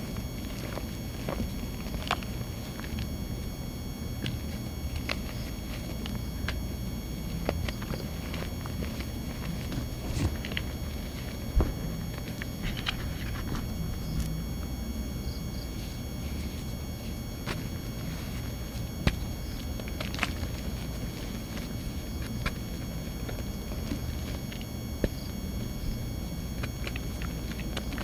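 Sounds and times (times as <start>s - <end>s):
cornstarch crunching and crumbling: 0.0s - 14.6s, 15.5s - 28.0s
electrical buzz: 0.0s - 28.0s.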